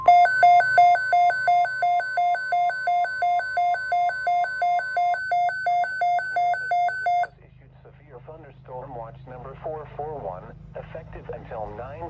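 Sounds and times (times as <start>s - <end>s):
alternating electronic alarm beep: 0.0s - 7.3s
steady warning alarm tone: 0.0s - 7.3s.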